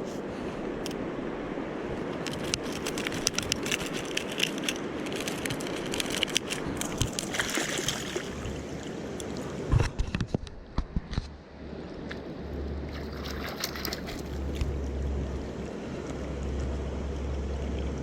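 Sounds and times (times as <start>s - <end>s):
stream water rushing: 0.0s - 9.8s, 11.6s - 18.0s
small water splashes: 5.1s - 9.6s, 12.8s - 15.1s.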